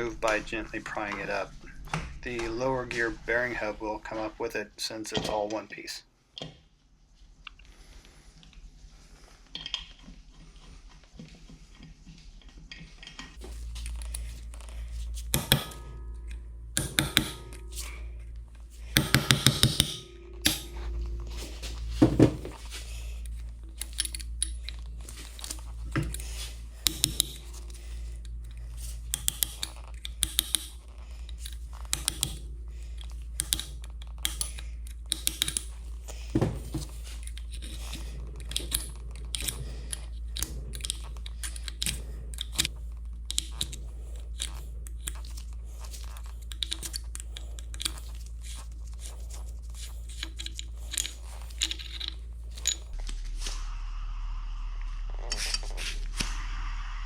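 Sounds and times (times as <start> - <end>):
steady low hum: 0.0 - 57.0
hand tools and metal parts clinking: 11.7 - 53.2.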